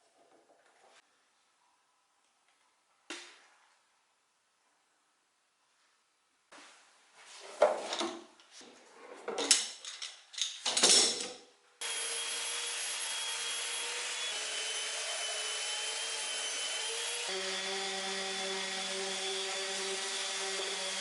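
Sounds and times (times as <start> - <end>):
power tool running: 11.8 - 21.0.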